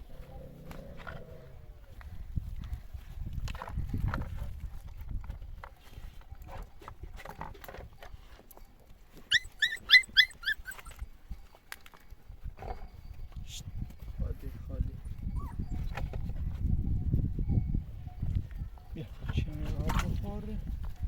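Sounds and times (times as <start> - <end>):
dog yelping: 9.2 - 11.0, 14.6 - 16.2.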